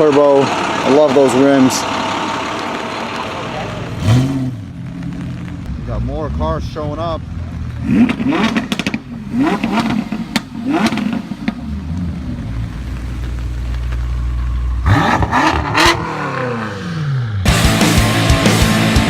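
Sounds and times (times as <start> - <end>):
supercar engine revving: 0.0 - 19.0
loud rock music: 17.4 - 19.0.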